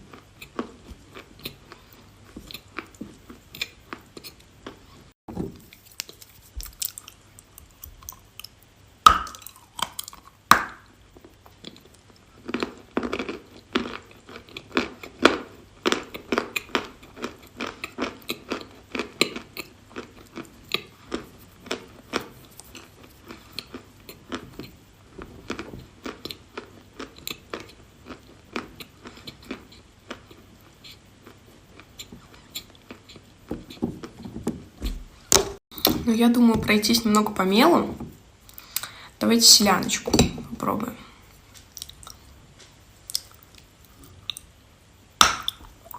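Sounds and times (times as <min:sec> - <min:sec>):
quick crunching chews: 0:05.7 - 0:08.7.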